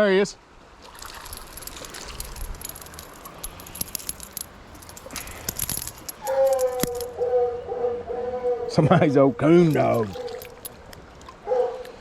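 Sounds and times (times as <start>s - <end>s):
creek hiss: 0.7s - 6.8s
fishing reel clicking and rattling: 1.0s - 7.2s.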